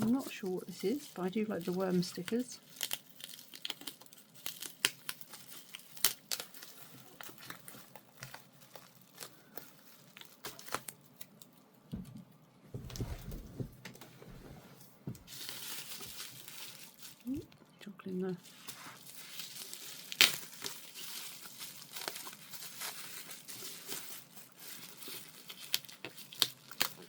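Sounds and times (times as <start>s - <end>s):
packaging rustling: 0.0s - 11.6s, 12.8s - 17.4s, 18.4s - 27.0s
packaging crinkling and tearing: 0.0s - 11.7s, 15.2s - 17.6s, 18.4s - 27.0s
dull bump: 11.9s - 15.3s.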